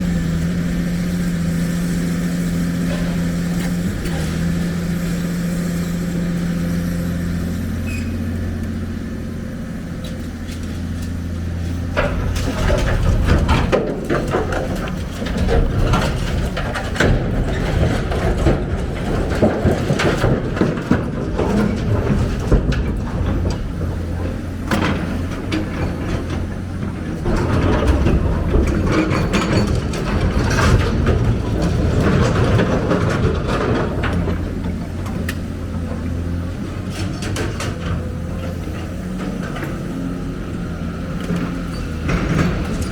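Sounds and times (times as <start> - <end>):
diesel engine drone: 0.0 - 42.9
metallic clanks and knocks: 11.8 - 42.9.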